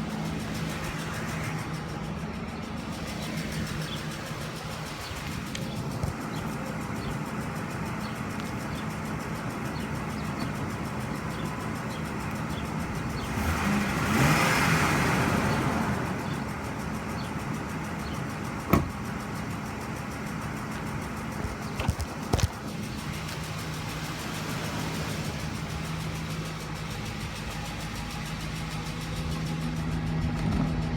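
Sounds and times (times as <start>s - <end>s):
engine idling with ticking: 0.0s - 30.9s
sharp clicks: 0.1s - 13.3s.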